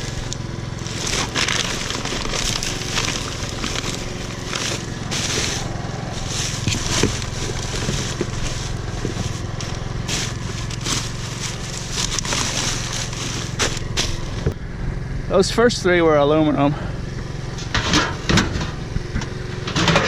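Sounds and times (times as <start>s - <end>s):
scrap crunching and crackling: 0.0s - 14.6s
engine idling hum: 0.0s - 20.0s.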